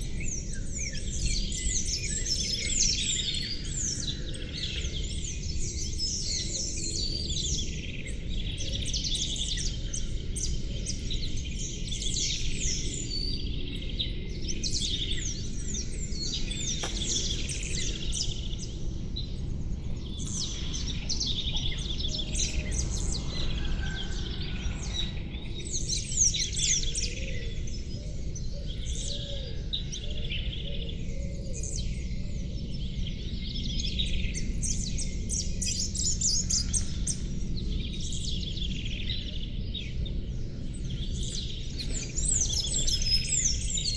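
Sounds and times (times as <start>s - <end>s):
small birds chirping and trilling: 0.0s - 43.9s
low background rumble: 15.3s - 23.2s.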